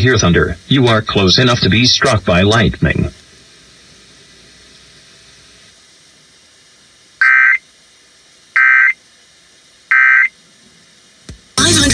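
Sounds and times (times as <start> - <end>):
screechy digital data tones: 7.2 - 7.6, 8.6 - 9.0, 9.9 - 10.3.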